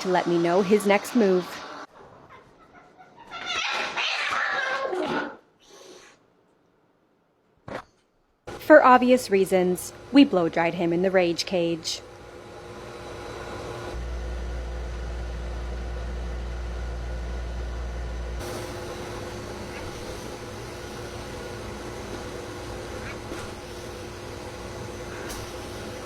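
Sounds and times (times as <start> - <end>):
blow dryer running: 0.0 - 1.9, 8.5 - 26.0.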